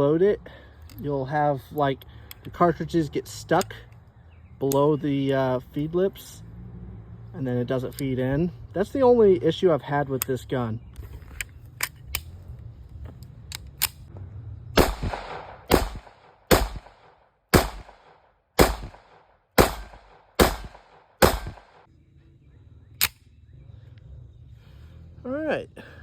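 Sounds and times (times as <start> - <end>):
pistol shots with echo: 14.8 - 21.9.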